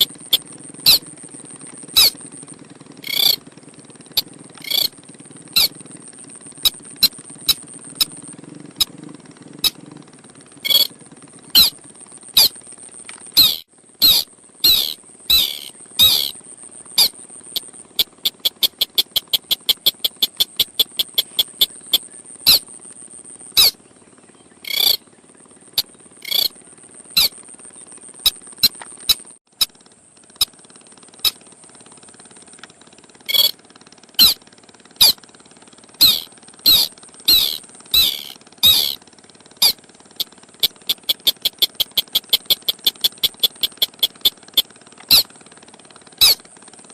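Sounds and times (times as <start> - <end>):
bird clicking notes: 0.0 - 1.0, 3.0 - 3.4, 4.2 - 4.9, 10.7 - 10.9, 11.6 - 11.8, 13.4 - 16.3, 17.0 - 22.6, 24.7 - 25.0, 25.8 - 26.5, 33.3 - 33.5, 36.0 - 39.0, 40.6 - 45.2
bird calling sharp notes: 0.0 - 1.1, 1.9 - 2.2, 3.0 - 3.4, 4.2 - 5.0, 5.6 - 5.8, 6.6 - 8.3, 10.6 - 10.9, 11.6 - 12.6, 13.3 - 22.6, 23.6 - 23.8, 24.6 - 25.0, 25.8 - 26.6, 33.3 - 33.6, 34.2 - 34.4, 35.0 - 35.2, 36.0 - 39.0, 39.6 - 45.3, 46.2 - 46.4.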